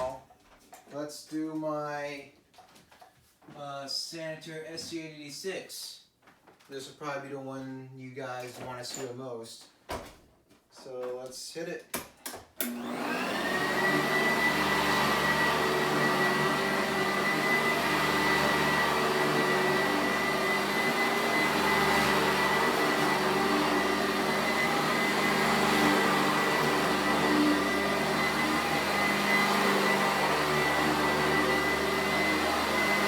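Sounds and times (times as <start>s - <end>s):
vacuum cleaner motor whine: 12.6s - 33.0s.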